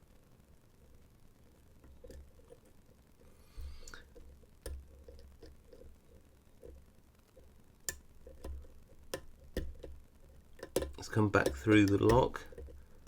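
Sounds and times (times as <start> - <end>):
lock pick ticking and scraping: 4.0 - 13.0.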